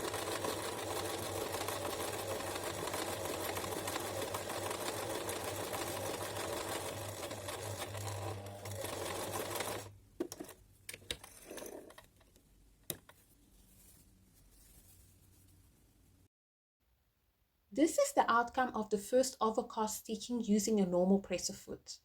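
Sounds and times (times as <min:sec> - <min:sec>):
sewing machine stitching: 0:00.0 - 0:12.0.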